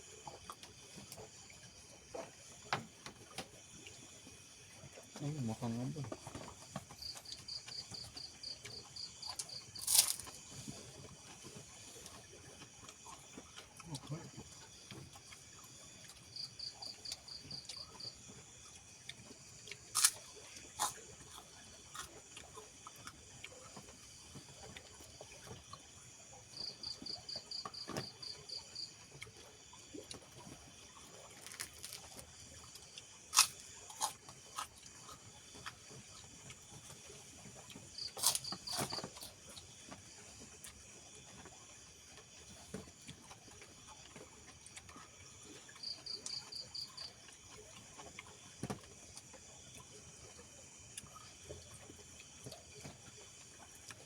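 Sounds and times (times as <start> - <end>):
cricket chirping: 0.0 - 54.0
faint insect hum: 0.0 - 54.0.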